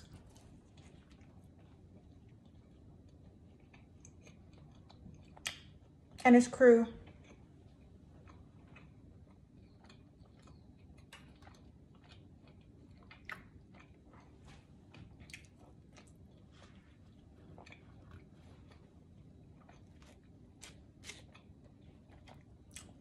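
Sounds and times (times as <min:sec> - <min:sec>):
person chewing food: 0:00.0 - 0:06.2, 0:07.0 - 0:23.0
wet mouth clicks and smacks: 0:03.7 - 0:05.8.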